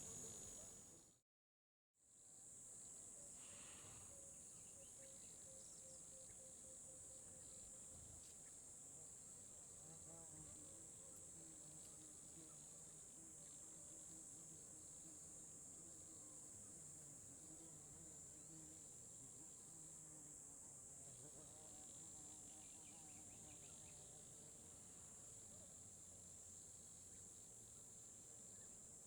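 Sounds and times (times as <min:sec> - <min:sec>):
crickets chirring: 0:00.0 - 0:01.0.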